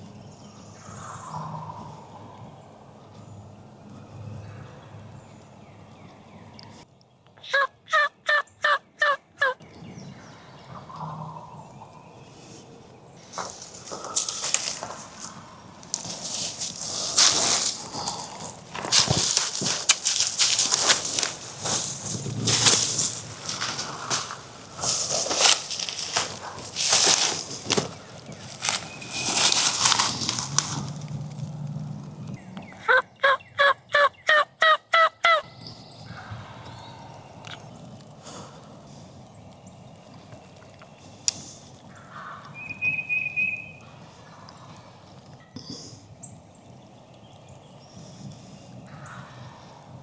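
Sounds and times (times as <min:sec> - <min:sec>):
turkey yelps: 0:07.4 - 0:09.6, 0:32.8 - 0:35.5
dry leaves crunching and rustling: 0:13.2 - 0:31.7.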